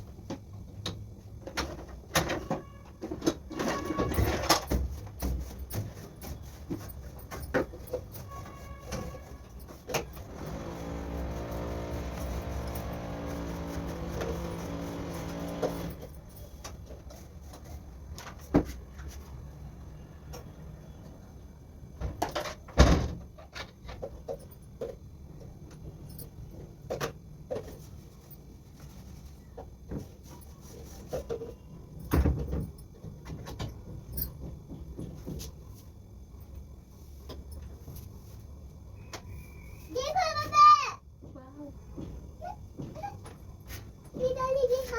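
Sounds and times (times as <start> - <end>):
machine hum: 10.2 - 16.1.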